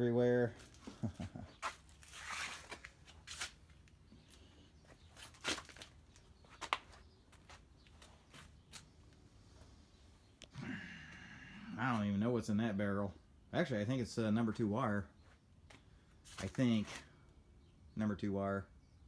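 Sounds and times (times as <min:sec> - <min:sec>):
brief rustle: 0:01.6 - 0:03.6.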